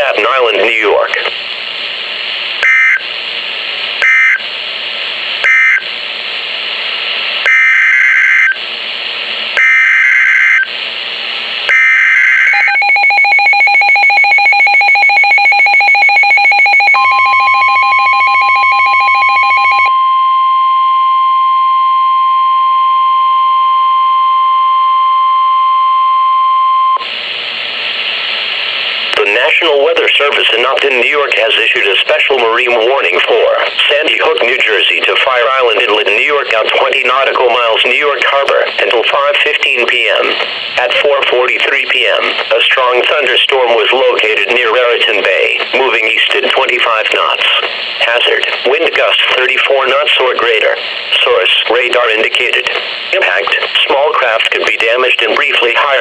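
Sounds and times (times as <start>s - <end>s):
radio hiss: 0.0s - 12.6s, 27.0s - 56.0s
steady warning alarm tone: 2.6s - 3.0s, 4.0s - 4.4s, 5.4s - 5.9s, 7.4s - 8.6s, 9.6s - 10.7s, 11.7s - 27.1s.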